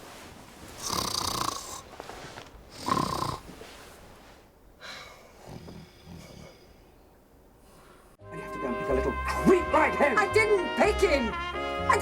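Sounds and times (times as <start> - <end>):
person snoring: 0.8 - 1.9, 2.7 - 3.5, 4.8 - 7.0.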